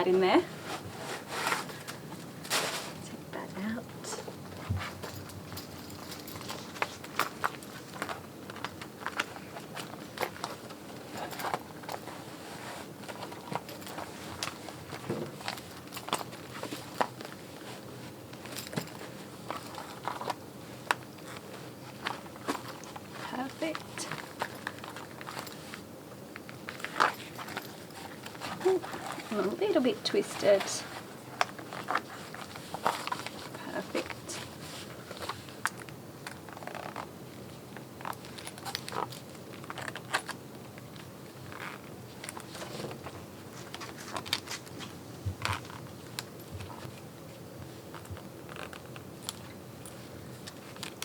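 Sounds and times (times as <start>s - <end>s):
boot handling knocks and rustles: 0.6s - 3.0s, 4.4s - 23.2s, 41.6s - 49.2s.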